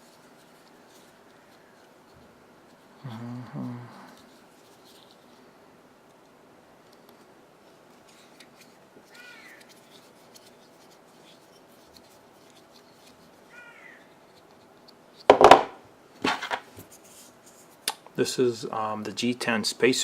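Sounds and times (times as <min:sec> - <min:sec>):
knocks: 0:15.3 - 0:16.6.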